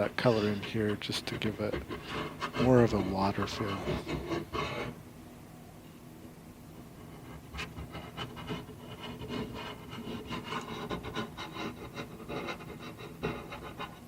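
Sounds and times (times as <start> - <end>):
pencil scribbling on paper: 0.2 - 5.0, 7.0 - 14.0.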